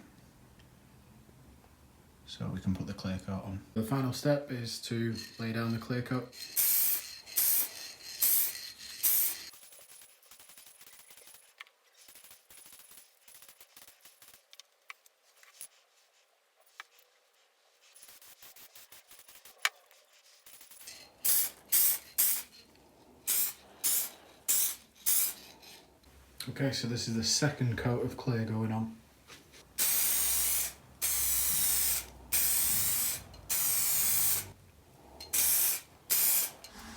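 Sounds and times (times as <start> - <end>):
aerosol can spraying hiss: 6.6 - 9.5, 21.2 - 22.5, 23.3 - 25.5, 29.7 - 34.6, 35.3 - 36.9.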